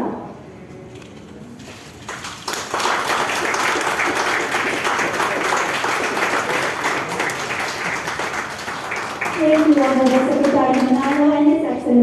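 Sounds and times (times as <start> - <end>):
audience applauding: 2.0 - 11.5.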